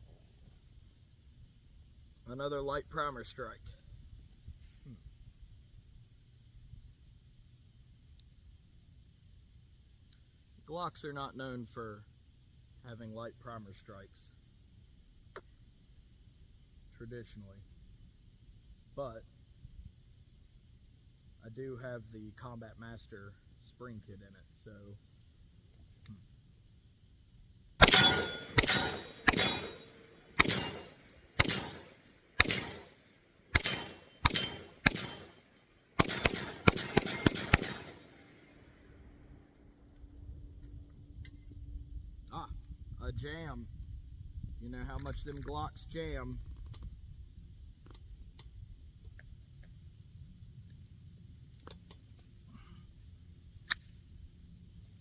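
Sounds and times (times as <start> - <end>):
pistol shots: 27.8 - 35.4, 36.0 - 38.2.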